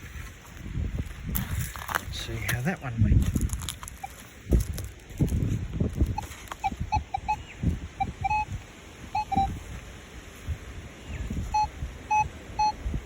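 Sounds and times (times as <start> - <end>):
soil rustling: 0.0 - 7.1
metal detector beeps: 4.0 - 4.2, 6.1 - 9.6, 11.5 - 12.8.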